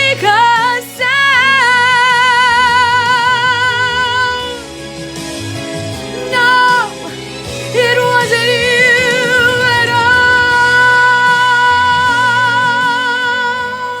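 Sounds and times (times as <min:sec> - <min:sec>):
backing music: 0:00.0 - 0:14.0
singer holding note with vibrato: 0:07.9 - 0:13.1.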